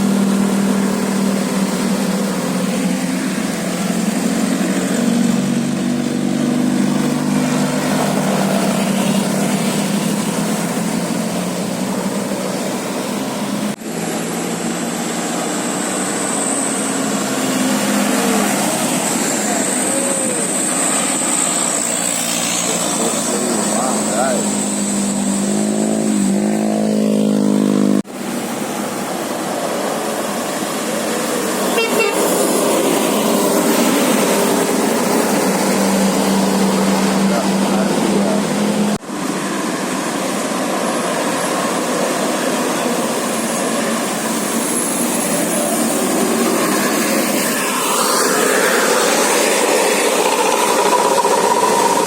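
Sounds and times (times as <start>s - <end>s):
bus engine: 0.0s - 52.0s
road noise: 0.0s - 52.0s
musical air horn tune: 31.7s - 32.5s
steady horn note: 31.7s - 32.5s.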